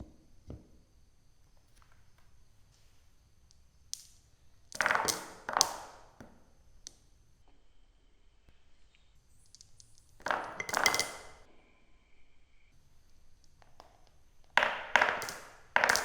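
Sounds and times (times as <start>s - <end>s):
faint high ringing tones: 7.4s - 12.9s
marbles clattering along a track: 9.4s - 11.4s, 14.5s - 16.0s.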